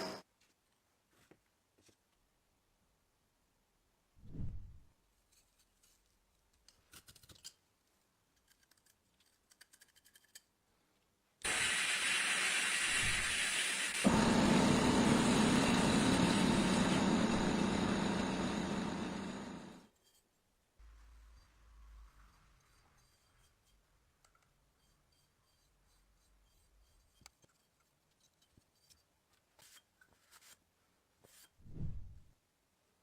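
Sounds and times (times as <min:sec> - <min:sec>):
power tool motor running: 0:11.5 - 0:19.8.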